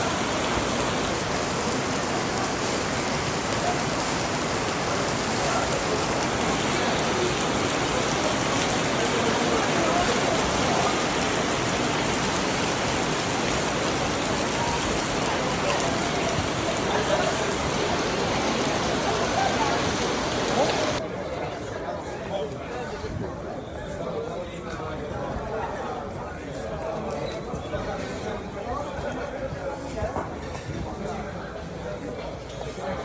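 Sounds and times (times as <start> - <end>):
steady rain: 0.0 - 21.0.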